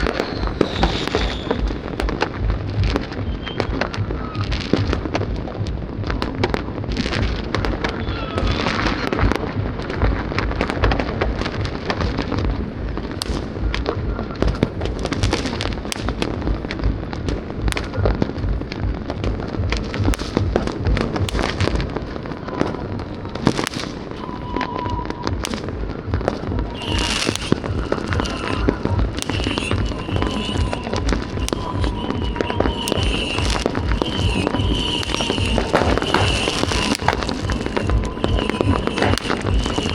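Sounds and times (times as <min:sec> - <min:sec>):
fireworks bangs and crackles: 0:00.0 - 0:39.9.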